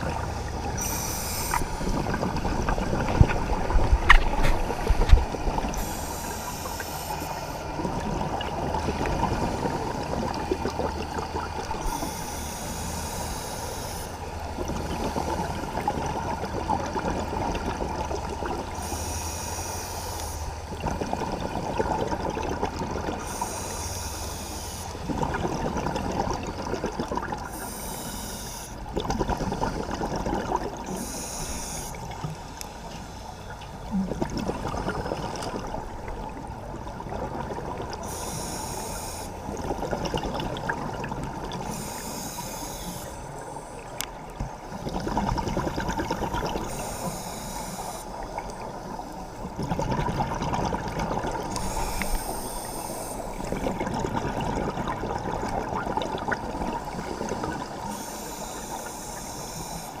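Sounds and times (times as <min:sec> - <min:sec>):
regulator hissing inhale: 0:00.8 - 0:02.0, 0:05.7 - 0:07.7, 0:11.9 - 0:14.2, 0:18.8 - 0:20.6, 0:23.2 - 0:25.0, 0:27.5 - 0:28.8, 0:30.9 - 0:34.0, 0:38.0 - 0:39.6, 0:41.6 - 0:44.1, 0:46.6 - 0:48.4, 0:51.5 - 0:53.7, 0:57.4 - 1:00.0
bubbling exhaust: 0:28.9 - 0:31.2, 0:33.8 - 0:42.1, 0:48.3 - 0:59.3.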